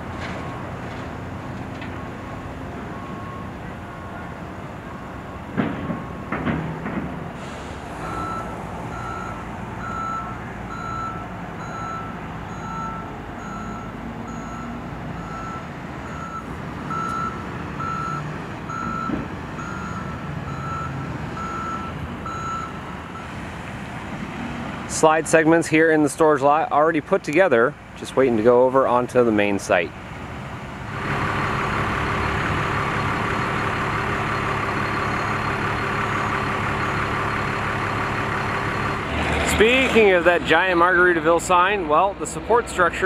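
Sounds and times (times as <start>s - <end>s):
engine rumble: 0.0s - 43.0s
reversing alarm beeping: 2.0s - 6.3s, 8.0s - 23.3s
low-pitched beep: 8.0s - 22.7s.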